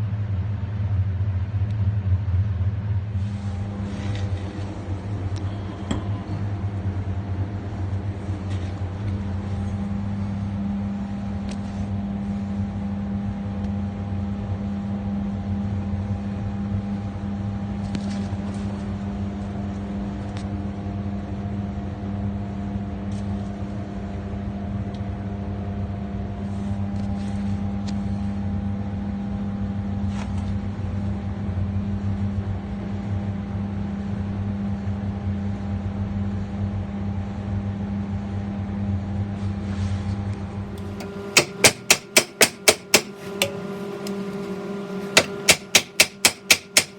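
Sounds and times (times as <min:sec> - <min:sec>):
low machine hum: 0:00.0 - 0:13.4, 0:40.4 - 0:46.9.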